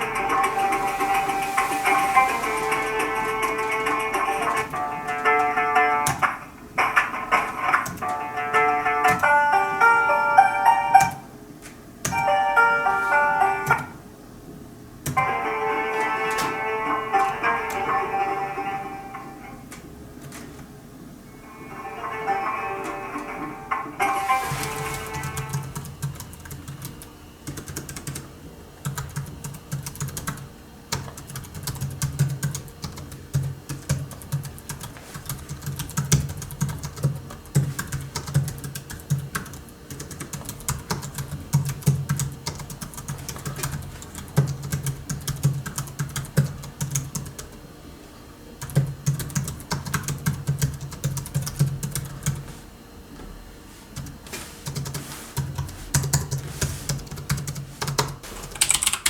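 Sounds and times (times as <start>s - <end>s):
typing on a keyboard: 3.0s - 8.3s, 9.0s - 9.4s, 11.0s - 11.2s, 25.2s - 47.6s, 48.6s - 52.4s, 54.0s - 59.0s.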